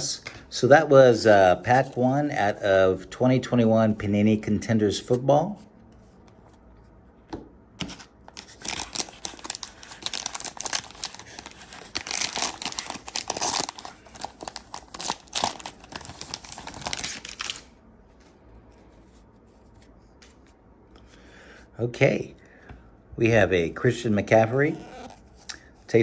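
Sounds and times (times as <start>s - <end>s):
wrapper tearing and crinkling: 7.9s - 17.7s.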